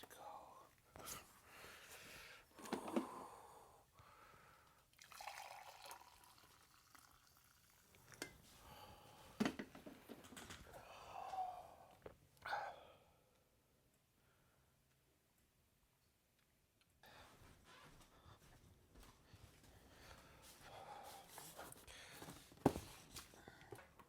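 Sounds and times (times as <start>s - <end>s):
liquid dripping: 4.9s - 8.4s.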